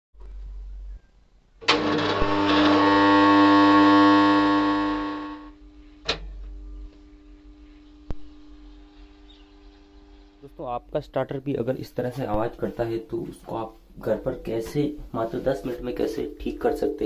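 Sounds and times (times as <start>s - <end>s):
faint steady hum: 0.2s - 17.0s
contactor buzzing loudly: 1.6s - 5.8s.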